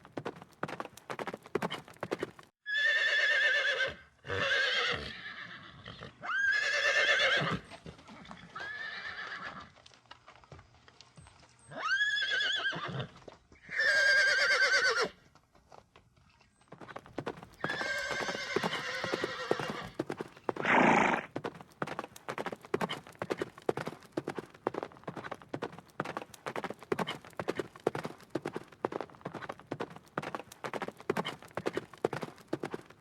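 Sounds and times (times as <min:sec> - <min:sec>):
horse hoofbeats clattering: 0:00.0 - 0:02.5, 0:15.3 - 0:33.0
horse neighing: 0:02.7 - 0:07.7, 0:11.8 - 0:15.2, 0:17.2 - 0:21.4.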